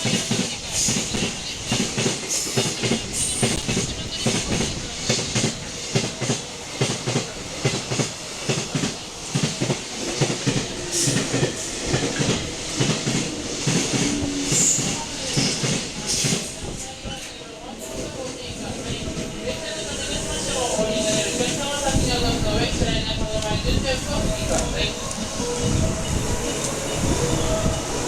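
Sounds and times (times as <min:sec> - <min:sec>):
train rolling noise: 0:00.0 - 0:28.0.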